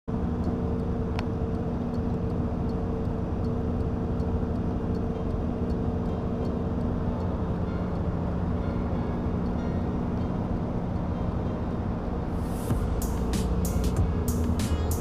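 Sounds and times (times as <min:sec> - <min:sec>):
faint regular ticking: 0:00.1 - 0:08.7
motor vehicle running: 0:00.1 - 0:15.0.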